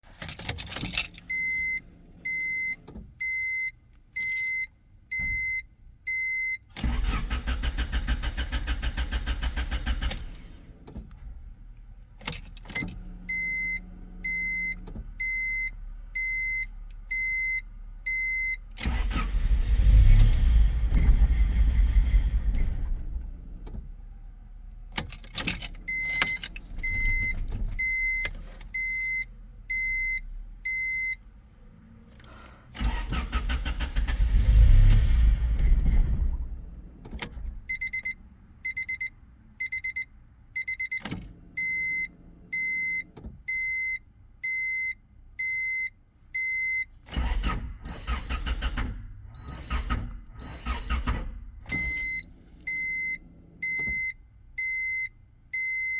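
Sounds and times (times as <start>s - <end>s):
keys jangling: 0.2s - 1.3s, 25.0s - 26.7s
car warning chime beeping: 0.5s - 23.6s, 25.0s - 31.5s, 32.8s - 55.9s
low engine rumble: 6.8s - 25.0s, 25.6s - 39.6s.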